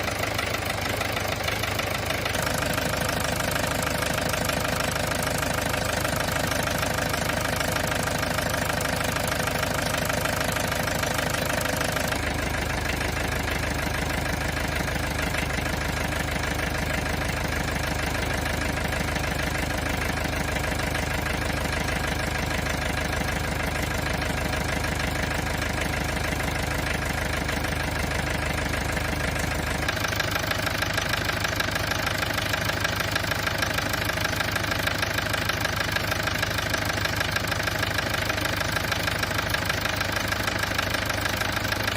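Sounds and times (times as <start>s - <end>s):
diesel engine idling: 0.0s - 41.9s.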